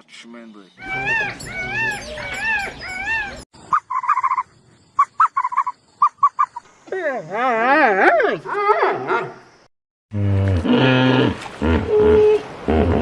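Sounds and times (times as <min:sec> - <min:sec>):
animal calls rising and falling: 0:00.8 - 0:04.4
rapid choppy animal calls: 0:00.8 - 0:06.7.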